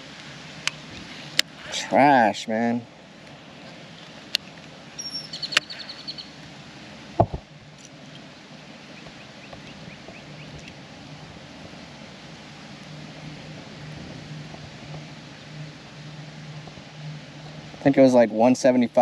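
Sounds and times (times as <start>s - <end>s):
steady wind: 0.0s - 19.0s
low thump: 7.2s - 7.5s.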